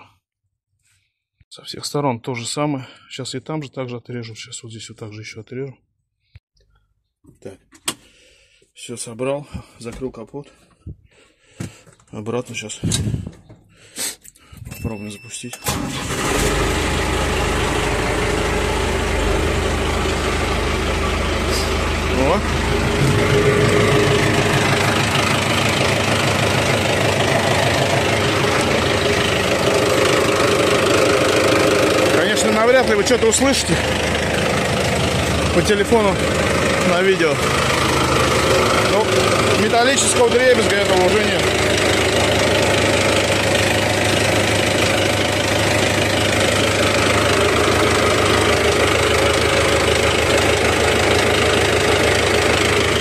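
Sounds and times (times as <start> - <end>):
tractor diesel engine running: 15.6 - 53.0.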